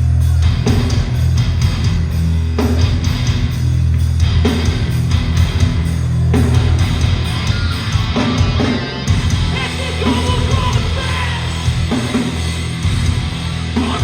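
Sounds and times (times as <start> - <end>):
bass guitar: 0.0 - 14.0
drums: 0.0 - 14.0
heavy distorted guitars: 0.0 - 14.0
shouted vocals: 9.5 - 11.7.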